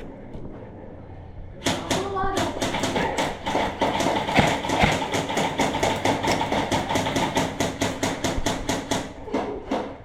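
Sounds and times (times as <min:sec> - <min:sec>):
airsoft guns firing rapidly: 0:01.6 - 0:09.4.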